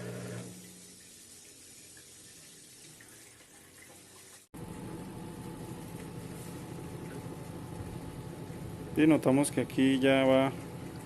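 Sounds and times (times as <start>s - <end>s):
washing machine draining water: 0.0s - 11.0s
washing machine drum spinning: 4.6s - 11.0s.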